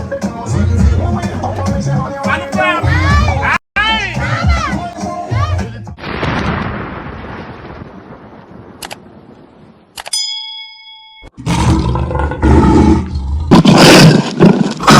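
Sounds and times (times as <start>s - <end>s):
bell-like ding: 10.1s - 11.4s.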